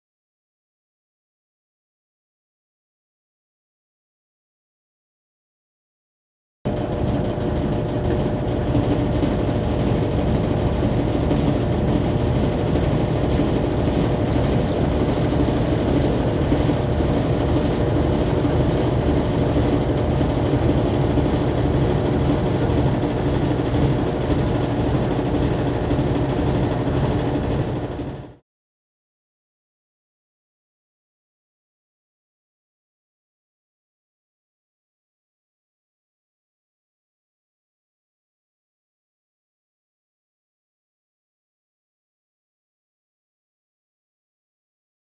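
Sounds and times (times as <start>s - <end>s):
washing machine mechanical hum: 6.7s - 28.4s
washing machine rattling: 6.7s - 28.4s.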